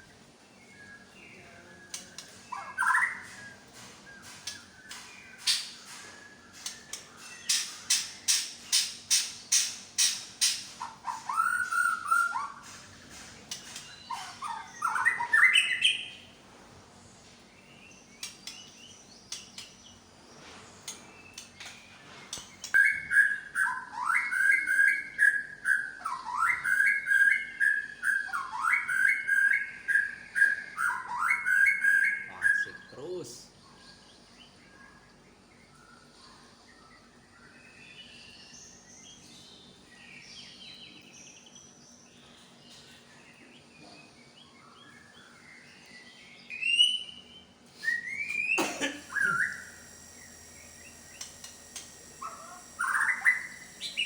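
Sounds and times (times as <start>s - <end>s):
songbird singing varied whistles: 22.6s - 32.9s, 46.5s - 54.0s.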